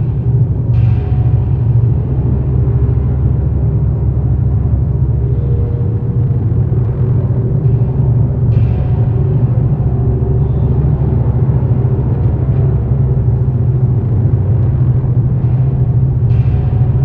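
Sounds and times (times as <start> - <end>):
low rumbling drone: 0.0 - 17.0.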